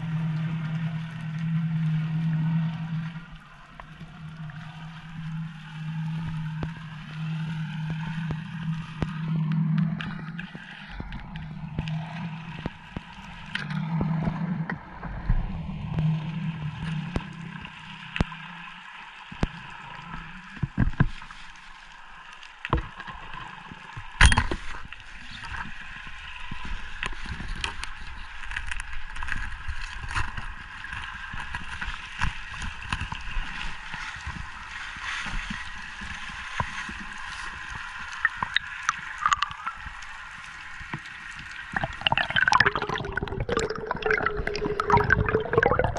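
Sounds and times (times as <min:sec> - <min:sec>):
small crackling clicks: 0:16.8 - 0:25.9, 0:26.5 - 0:45.9.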